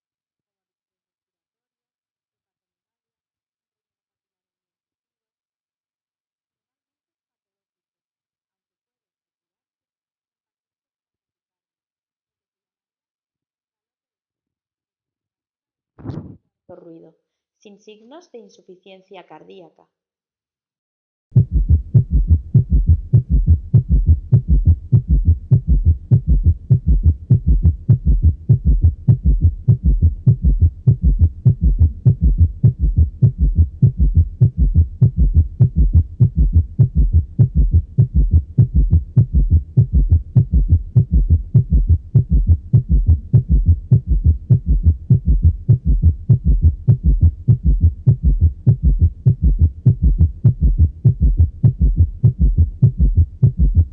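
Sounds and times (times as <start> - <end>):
rapid heartbeat: 21.3 - 53.9.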